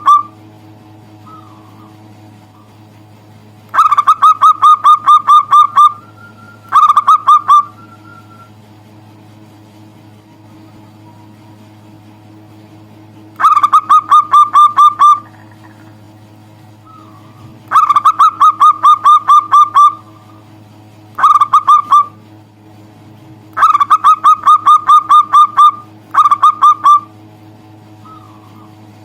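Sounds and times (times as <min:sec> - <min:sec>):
dove calling in rapid notes: 0:00.0 - 0:00.5, 0:01.1 - 0:02.9, 0:03.7 - 0:08.6, 0:13.4 - 0:16.1, 0:16.7 - 0:22.3, 0:23.5 - 0:27.3, 0:27.9 - 0:29.0
steady low hum: 0:00.0 - 0:29.0.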